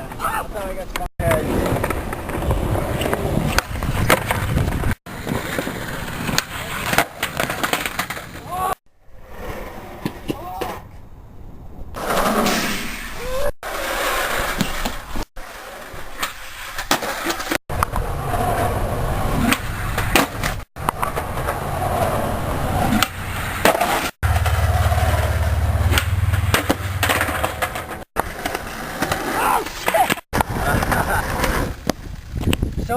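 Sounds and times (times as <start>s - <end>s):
skateboard clacking on ground: 0.0s - 8.5s, 19.4s - 22.0s, 22.9s - 32.6s
skateboard wheels rolling on pavement: 0.0s - 32.9s.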